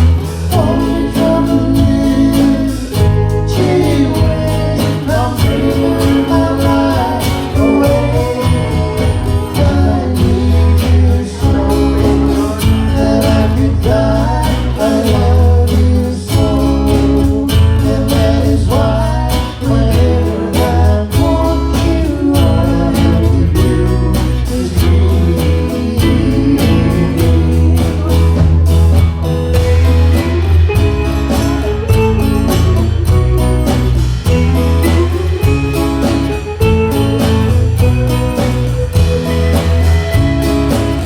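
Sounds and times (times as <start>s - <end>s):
bass: 0.0s - 41.0s
guitar: 0.0s - 41.0s
person singing: 0.0s - 41.0s
drum beat: 26.0s - 41.0s.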